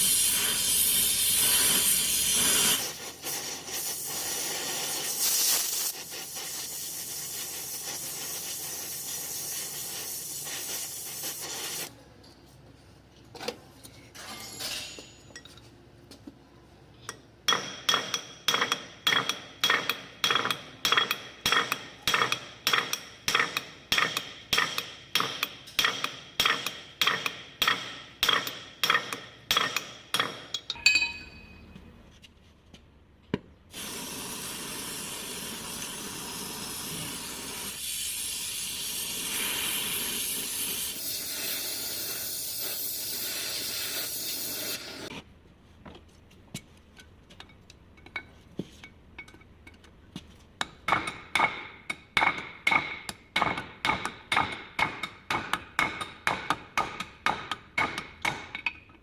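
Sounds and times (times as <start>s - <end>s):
steady hiss: 0.0s - 11.9s, 33.7s - 45.1s.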